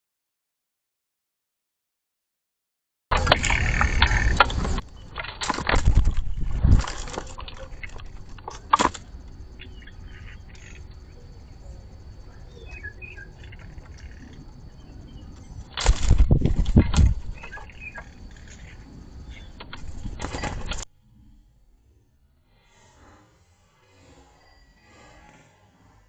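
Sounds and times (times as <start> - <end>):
faint bird chirps: 9.5 - 15.7, 17.2 - 19.6.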